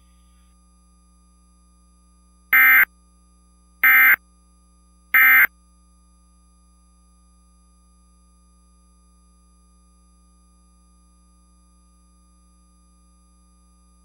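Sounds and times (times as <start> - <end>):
harsh digital data bursts: 5.2 - 5.5.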